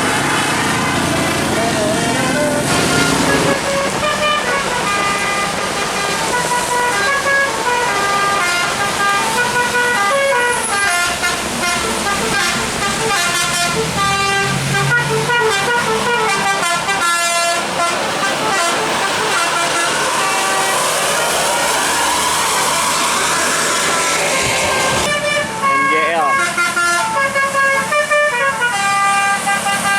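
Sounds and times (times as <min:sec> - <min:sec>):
musical air horn melody: 0:00.0 - 0:29.9.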